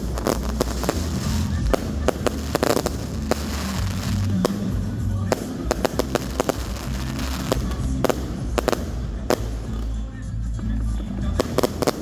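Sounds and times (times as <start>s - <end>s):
fireworks banging: 0.0s - 12.0s
music with steady bass: 0.0s - 12.0s.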